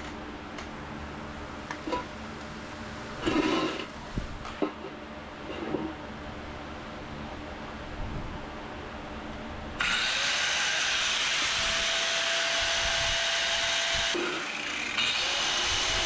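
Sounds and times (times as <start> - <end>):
loud grinding: 9.8 - 16.0
power tool motor whine: 9.8 - 16.0.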